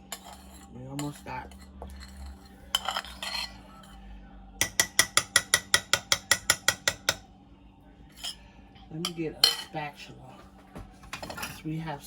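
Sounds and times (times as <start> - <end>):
utensil scraping a bowl: 0.0 - 5.7, 8.1 - 8.4, 11.2 - 11.7.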